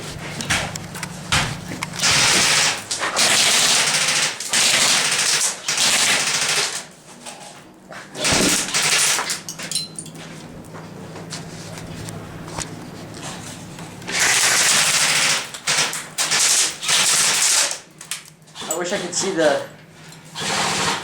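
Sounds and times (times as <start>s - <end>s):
airsoft gun firing bursts: 2.0s - 6.8s, 8.2s - 9.3s, 14.1s - 17.8s, 20.4s - 21.0s.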